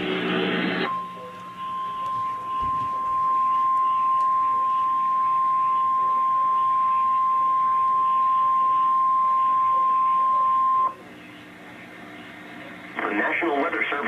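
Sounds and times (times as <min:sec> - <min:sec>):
high-pitched alarm tone: 0:00.8 - 0:11.0
radio static hiss: 0:08.7 - 0:14.0.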